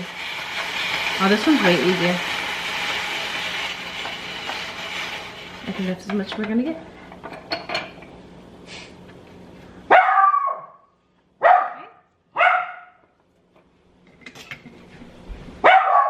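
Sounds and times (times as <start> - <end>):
dog barking: 9.9 - 13.0, 15.6 - 16.0.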